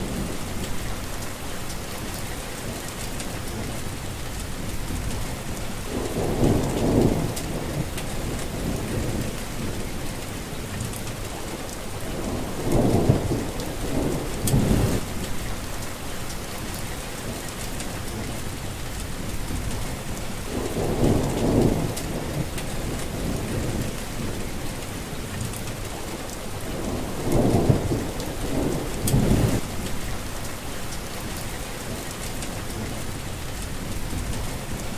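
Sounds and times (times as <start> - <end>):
low rumbles of thunder: 0.0 - 34.9
steady rain falling: 0.0 - 34.9.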